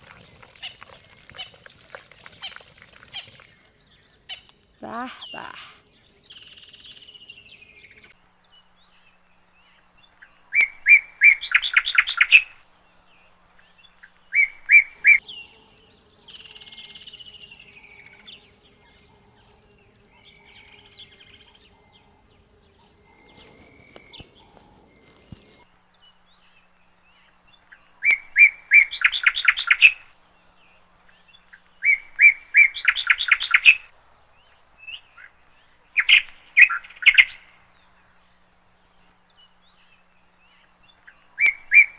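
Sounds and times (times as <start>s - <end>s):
songbird singing trills: 13.8s - 30.0s
downward-sliding whistled bird calls: 22.8s - 25.6s.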